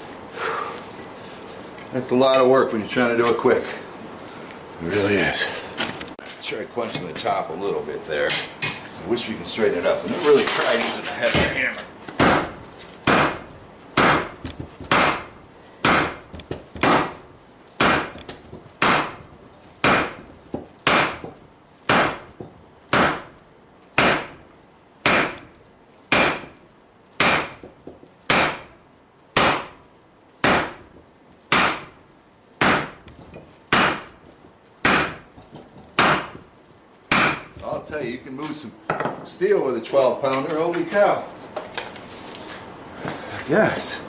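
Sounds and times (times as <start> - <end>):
sledgehammer striking steel on anvil: 37.1 - 37.5.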